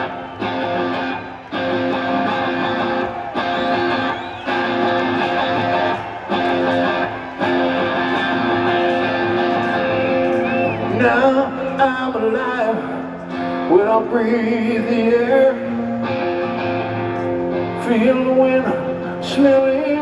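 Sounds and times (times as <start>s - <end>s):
live rock band playing: 0.0s - 19.6s
strummed guitar chords: 0.0s - 20.0s
person singing: 6.8s - 20.0s.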